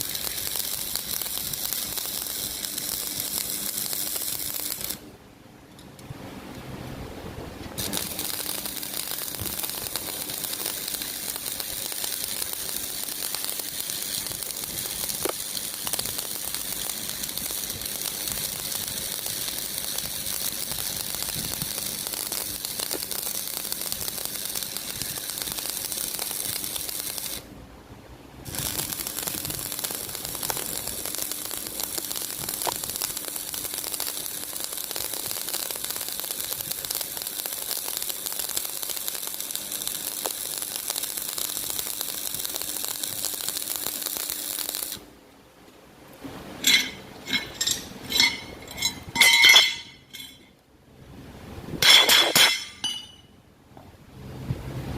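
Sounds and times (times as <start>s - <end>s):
arc welding crackling hiss: 0.0s - 5.1s, 7.8s - 27.5s, 28.4s - 45.1s.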